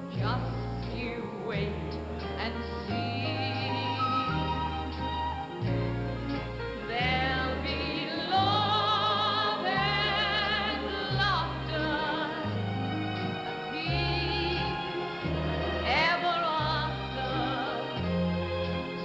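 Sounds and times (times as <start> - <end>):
orchestra playing: 0.0 - 19.0.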